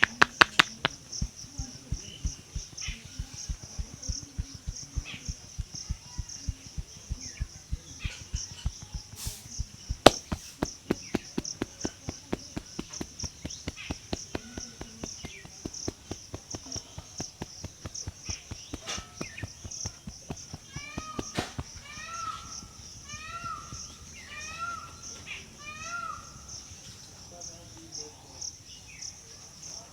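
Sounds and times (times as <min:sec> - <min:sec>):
sharp crack: 0:00.0 - 0:22.5
rhythmic hand tapping massage: 0:00.0 - 0:24.9.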